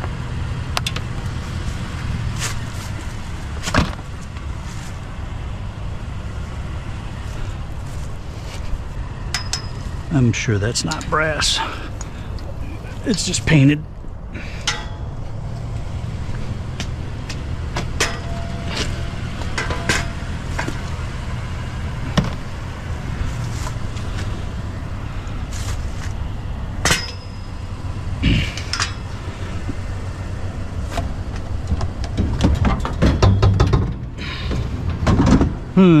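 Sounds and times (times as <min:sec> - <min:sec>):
vehicle engine idling: 0:00.0 - 0:36.0
loud metal clanks: 0:09.2 - 0:10.0, 0:14.5 - 0:15.3, 0:17.7 - 0:21.0, 0:26.8 - 0:29.2, 0:31.8 - 0:35.7
scrap metal being handled: 0:17.7 - 0:21.0.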